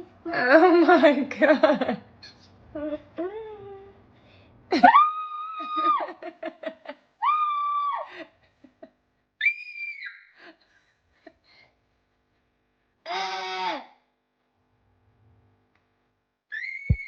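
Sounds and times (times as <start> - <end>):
child screaming: 9.4 - 10.3, 13.1 - 14.0, 16.5 - 17.0.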